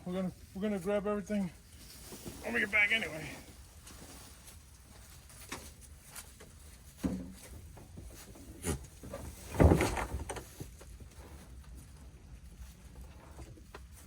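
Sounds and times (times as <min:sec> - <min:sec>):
thud and scrape: 0:06.9 - 0:11.5
knocks and rubbing: 0:07.0 - 0:11.4.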